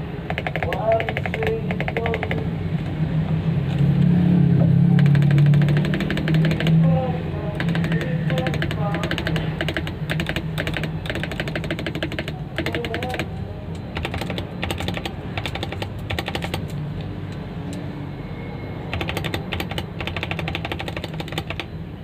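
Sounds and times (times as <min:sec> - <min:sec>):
mechanical keyboard typing: 0:00.3 - 0:02.5, 0:04.9 - 0:16.8, 0:18.9 - 0:21.8.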